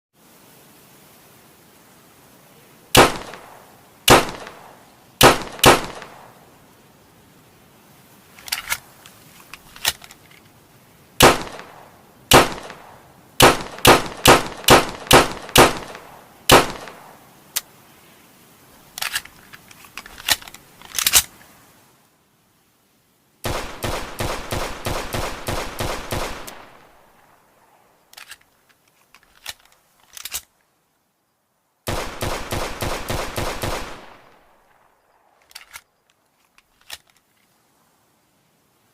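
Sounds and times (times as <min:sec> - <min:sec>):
pistol gunshots: 0:03.0 - 0:06.3, 0:11.2 - 0:17.1, 0:23.5 - 0:27.0, 0:31.9 - 0:34.4.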